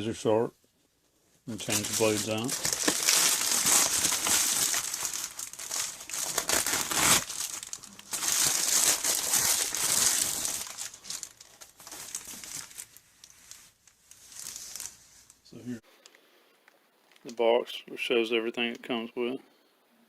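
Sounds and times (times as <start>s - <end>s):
packaging bag crinkling: 1.5s - 15.4s.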